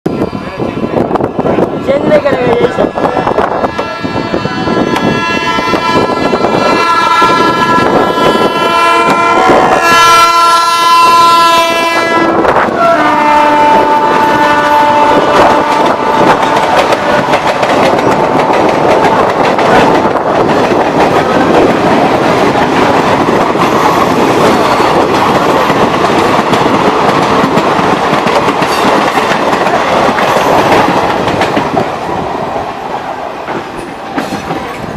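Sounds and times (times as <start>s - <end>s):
locomotive horn: 2.7s - 17.6s
train wheels clattering over rails: 13.5s - 34.9s.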